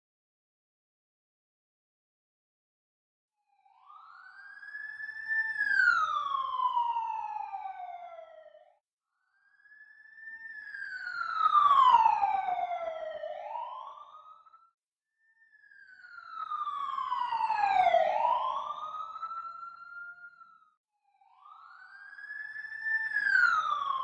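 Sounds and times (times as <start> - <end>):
siren wailing: 16.0 - 20.6, 21.7 - 24.0.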